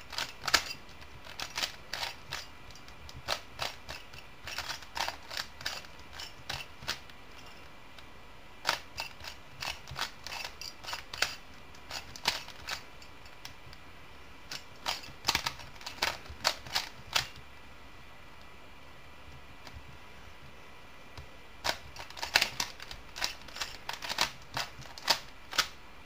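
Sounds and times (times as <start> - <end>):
puzzle cube clacking: 0.0 - 7.7, 8.6 - 13.8, 14.5 - 17.4, 21.6 - 25.8.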